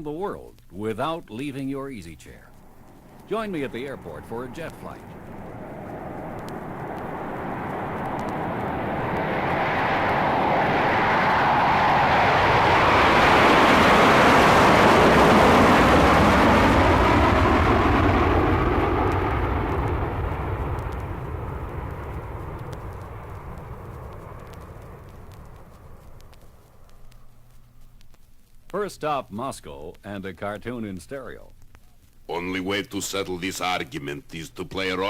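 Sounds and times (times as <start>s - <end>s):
jet engine roar passing by: 1.9s - 27.4s.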